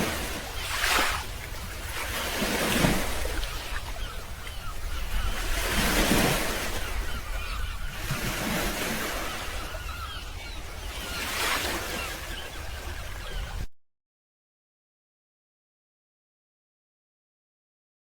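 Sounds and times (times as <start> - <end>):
waves washing in: 0.0 - 13.4.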